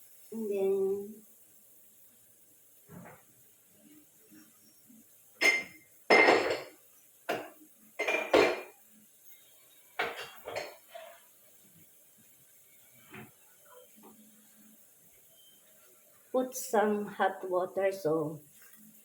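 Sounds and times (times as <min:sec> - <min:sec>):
utensil clattering against pot: 0:10.0 - 0:10.8.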